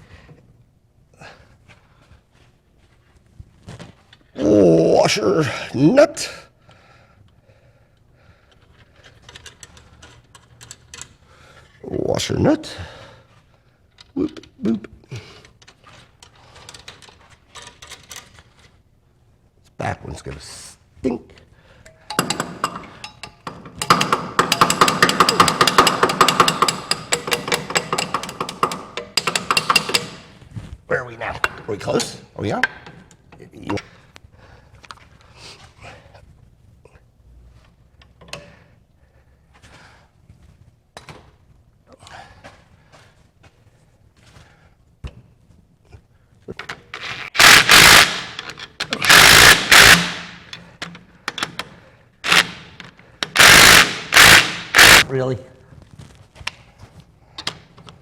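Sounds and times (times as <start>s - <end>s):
ratchet wrench clicking: 22.1s - 30.3s, 47.1s - 50.6s, 52.2s - 55.0s.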